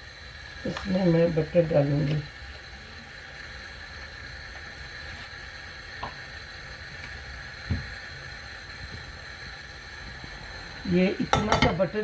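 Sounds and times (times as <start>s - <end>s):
gas stove burner rumbling: 0.0s - 12.0s
utensil knocking against pot: 11.3s - 11.9s.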